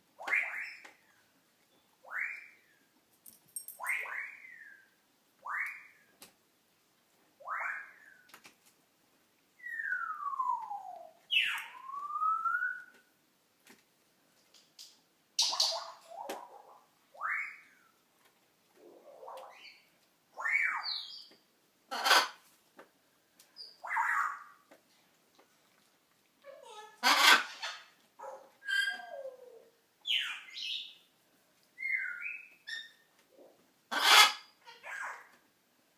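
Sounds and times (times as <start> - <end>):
parrot whistles and squawks: 7.4 - 8.3, 9.6 - 12.9, 15.4 - 17.8, 20.4 - 21.1, 27.0 - 27.9, 28.6 - 30.6, 33.9 - 35.3.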